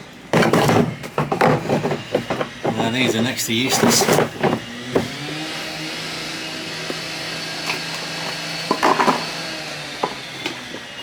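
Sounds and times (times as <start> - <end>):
hard objects clattering: 0.3 - 5.4, 6.9 - 9.4.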